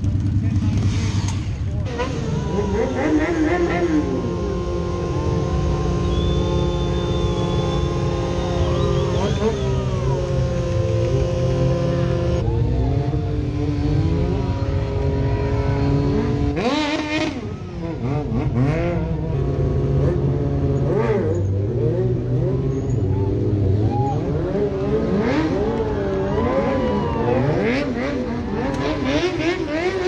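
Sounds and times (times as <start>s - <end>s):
low engine rumble: 0.0s - 16.6s
motorcycle engines revving: 0.0s - 30.0s.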